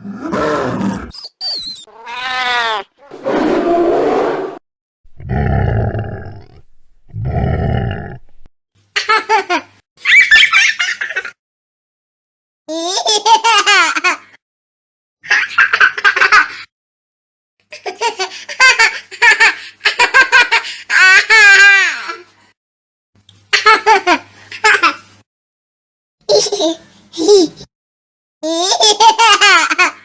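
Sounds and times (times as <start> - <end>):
child giggling: 26.3 - 27.7.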